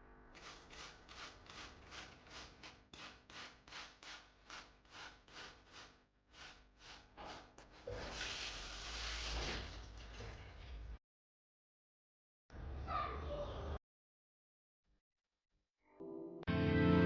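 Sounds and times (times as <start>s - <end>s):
spray bottle squirts hissing: 0.4s - 7.0s.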